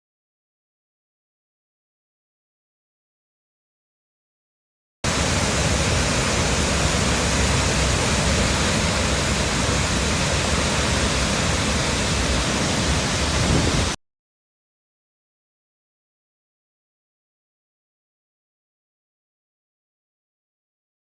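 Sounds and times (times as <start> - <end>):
waterfall rushing: 5.1 - 14.0.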